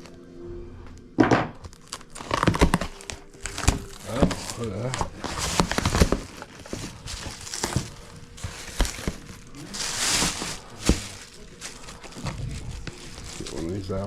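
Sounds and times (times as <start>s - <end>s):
packaging rustle: 1.6s - 14.0s
cardboard knocks and clicks: 2.2s - 9.3s.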